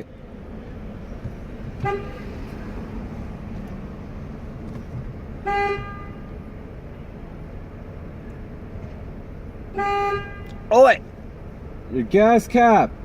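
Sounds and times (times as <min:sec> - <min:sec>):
car engine rumble: 0:00.0 - 0:13.0
car horn honking: 0:01.6 - 0:02.8, 0:05.3 - 0:07.2, 0:09.7 - 0:10.9.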